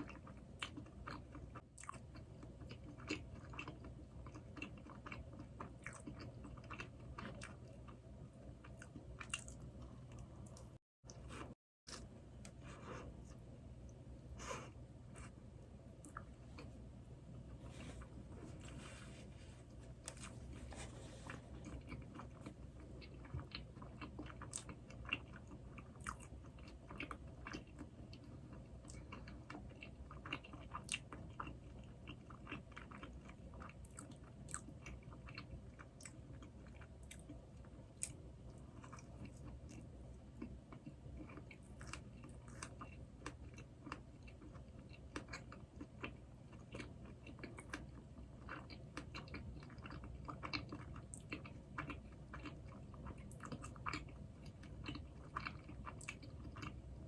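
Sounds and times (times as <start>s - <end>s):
person chewing doughnuts: 0.0s - 15.4s, 16.0s - 16.8s, 20.0s - 57.0s.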